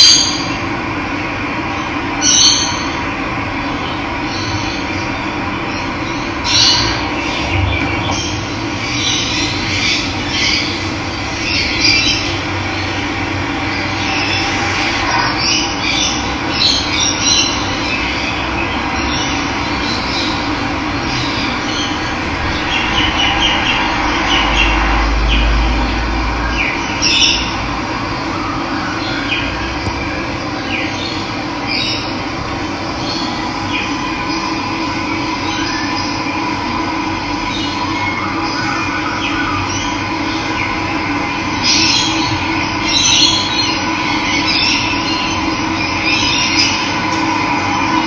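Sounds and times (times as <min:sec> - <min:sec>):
birds chirping: 0:29.0 - 0:36.2.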